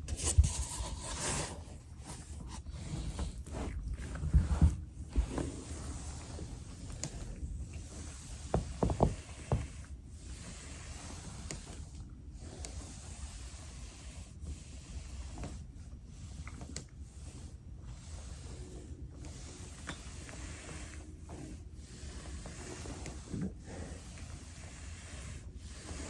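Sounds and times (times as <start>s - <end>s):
body rubbing on foam roller: 0.0s - 26.0s
soft thumps: 8.5s - 9.8s.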